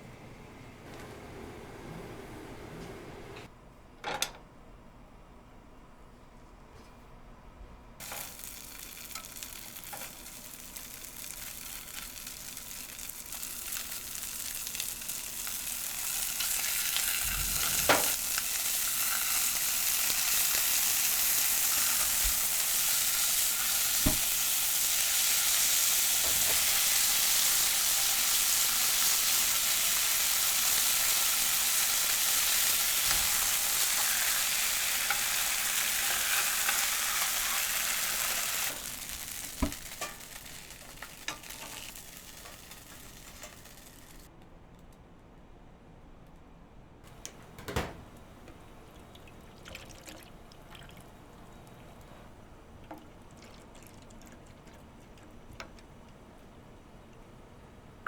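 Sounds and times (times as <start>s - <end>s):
food sizzling in a pan: 8.0s - 44.3s.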